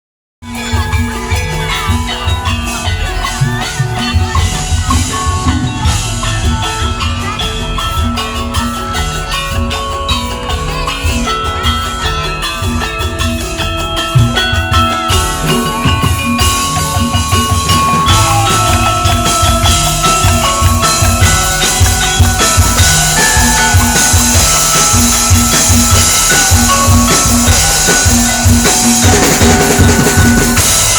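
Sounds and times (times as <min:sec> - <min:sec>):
driving drum beat: 0:00.4 - 0:30.9
pitched percussion melody: 0:00.4 - 0:30.9.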